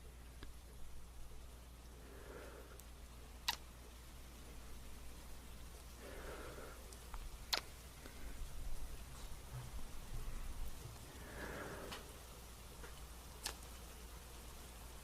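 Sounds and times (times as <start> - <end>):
faint low hum: 0.0 - 15.0
soft breathy sigh: 11.1 - 12.1.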